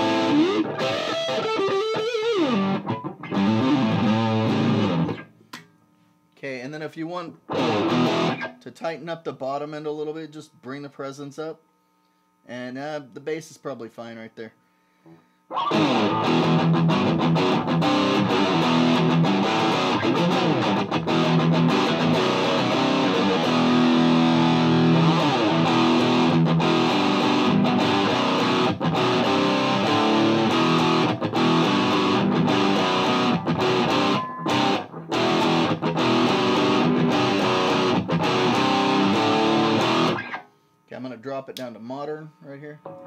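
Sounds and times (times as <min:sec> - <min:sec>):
distorted electric guitar: 0:00.0 - 0:05.4, 0:07.4 - 0:08.7, 0:15.1 - 0:40.6.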